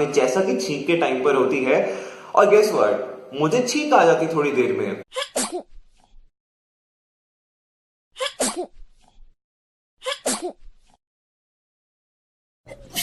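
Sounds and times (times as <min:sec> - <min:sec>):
person sneezing: 0:05.2 - 0:05.7, 0:08.2 - 0:08.7, 0:10.0 - 0:10.6.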